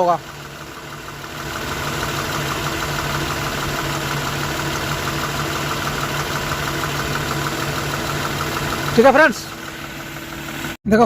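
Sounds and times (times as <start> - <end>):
car engine idling rough: 0.0 - 10.8.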